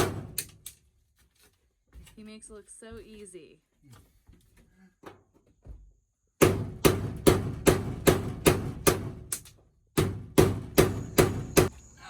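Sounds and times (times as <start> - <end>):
hammer striking metal: 6.4 - 11.7.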